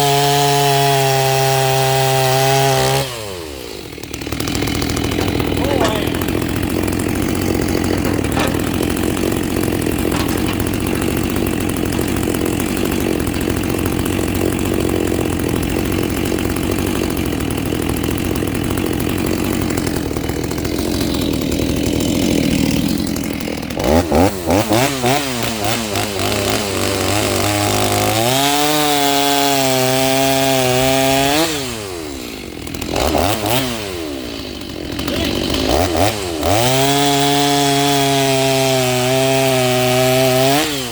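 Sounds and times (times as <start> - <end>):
chainsaw cutting log: 0.0 - 40.9
chainsaw revving: 0.0 - 40.9.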